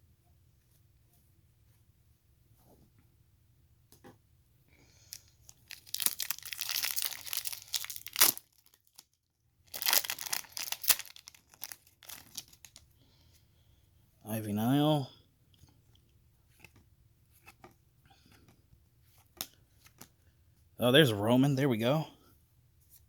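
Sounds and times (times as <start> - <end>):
foil wrapper crinkling and tearing: 5.0 - 12.9.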